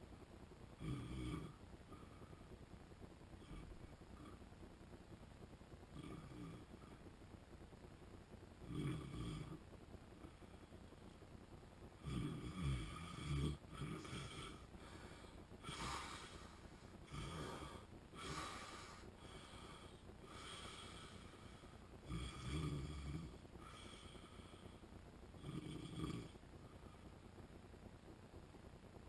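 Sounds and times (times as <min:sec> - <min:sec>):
quiet breaths: 0:00.0 - 0:29.0
man snoring: 0:00.8 - 0:02.1, 0:03.4 - 0:04.4, 0:05.9 - 0:06.9, 0:08.6 - 0:09.6, 0:12.0 - 0:24.6, 0:25.4 - 0:26.4.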